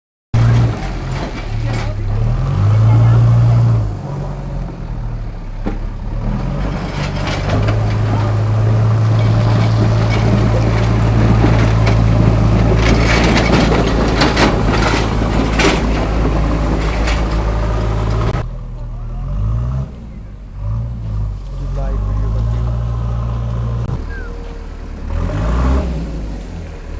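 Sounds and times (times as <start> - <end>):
vehicle engine running: 0.4 - 26.9
dense crackling crunching noise: 6.5 - 18.4.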